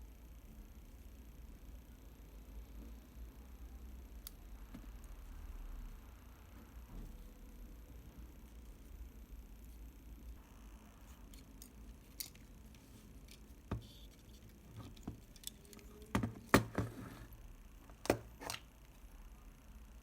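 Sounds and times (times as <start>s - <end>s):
small metallic clicks and taps: 13.2s - 16.1s.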